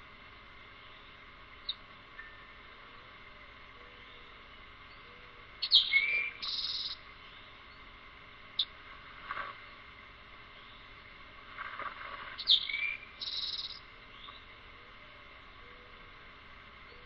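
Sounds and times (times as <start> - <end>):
birds chirping: 3.8 - 16.0.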